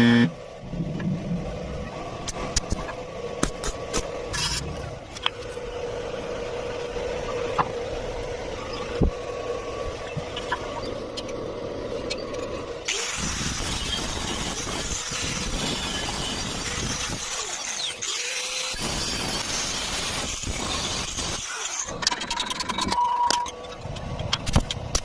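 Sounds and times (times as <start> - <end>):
angle grinder cutting metal: 12.9 - 22.0.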